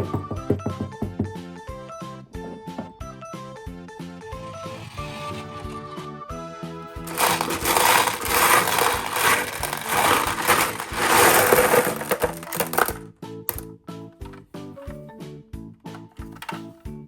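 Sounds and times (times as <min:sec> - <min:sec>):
light background music: 0:10.9 - 0:17.0.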